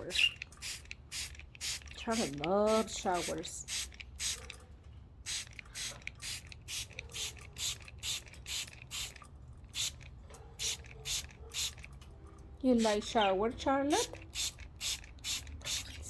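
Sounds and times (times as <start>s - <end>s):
spray bottle hissing: 0.0s - 4.4s, 5.3s - 9.2s, 9.8s - 10.0s, 10.6s - 11.8s, 14.3s - 16.0s.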